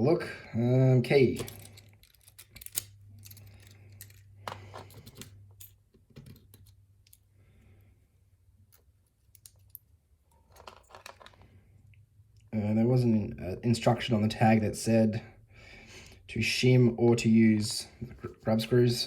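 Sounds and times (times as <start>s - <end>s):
metal lock clicks and scrapes: 1.3s - 7.2s.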